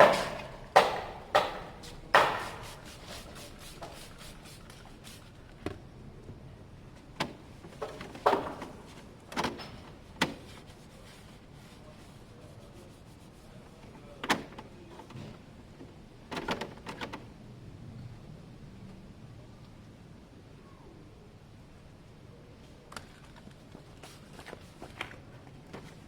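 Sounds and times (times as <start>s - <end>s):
hands handling plastic bodywork: 0.0s - 4.0s.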